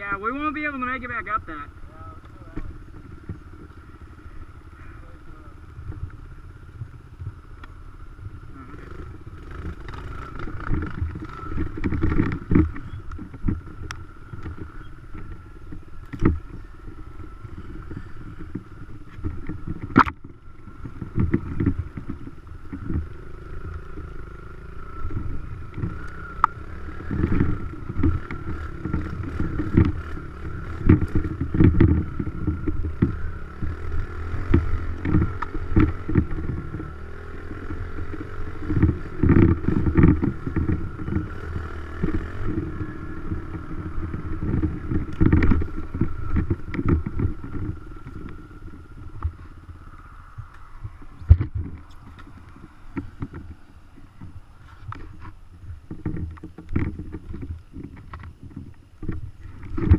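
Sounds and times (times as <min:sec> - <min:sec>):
dirt bike engine: 0:00.0 - 0:59.9
sharp knocks and rattles: 0:08.9 - 0:49.8, 0:50.4 - 0:59.9.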